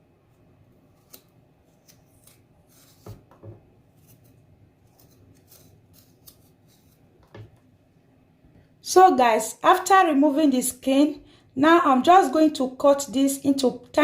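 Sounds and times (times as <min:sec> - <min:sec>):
ginger skin scraping: 0:00.9 - 0:03.2, 0:03.8 - 0:07.2.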